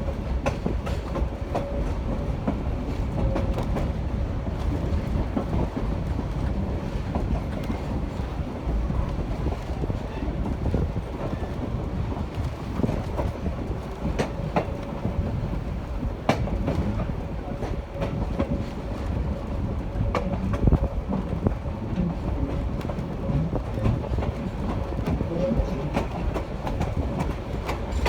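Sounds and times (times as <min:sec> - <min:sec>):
train car rumbling on track: 0:00.0 - 0:28.0
wheels clicking over rail joints: 0:22.4 - 0:28.0.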